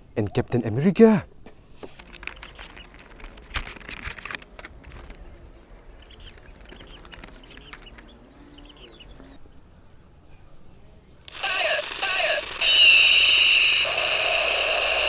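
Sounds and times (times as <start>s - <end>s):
faint short chirps: 4.8s - 9.4s.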